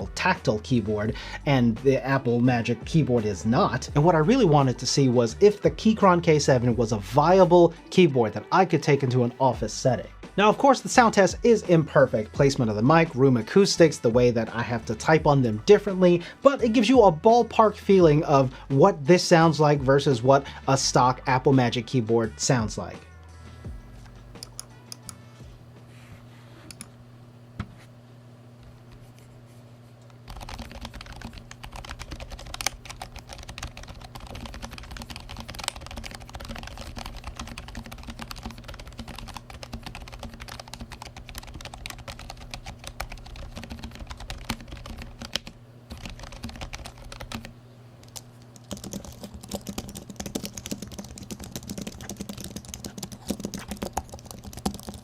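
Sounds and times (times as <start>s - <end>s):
rapid typing on keyboard: 30.3s - 47.5s, 48.1s - 55.0s.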